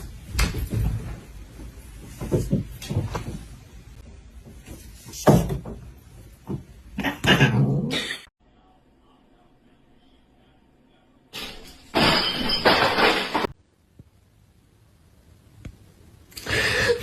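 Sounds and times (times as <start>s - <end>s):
knocks and bumps: 0.0s - 3.8s.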